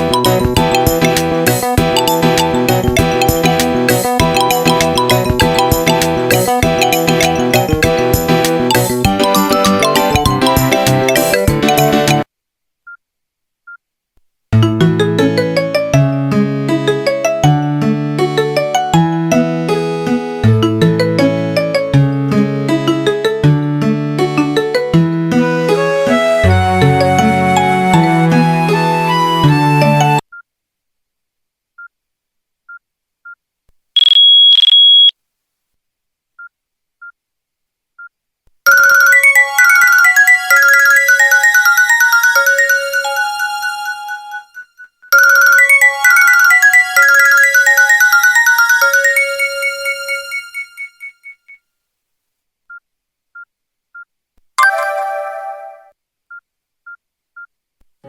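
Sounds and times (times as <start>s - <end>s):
melodic ringtone: 8.7s - 12.3s, 38.7s - 51.4s, 54.6s - 55.9s
soft electronic beeps: 34.0s - 35.2s
bright chime: 54.6s - 55.9s.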